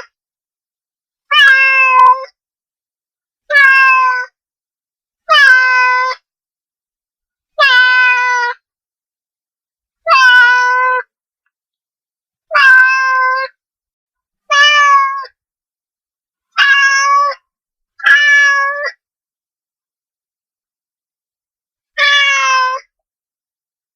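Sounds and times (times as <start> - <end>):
cat meowing: 1.3 - 2.3, 3.5 - 4.3, 5.3 - 6.2, 7.6 - 8.6, 10.1 - 11.1, 12.5 - 13.6, 14.5 - 15.3, 16.6 - 17.4, 18.0 - 19.0, 22.0 - 22.9.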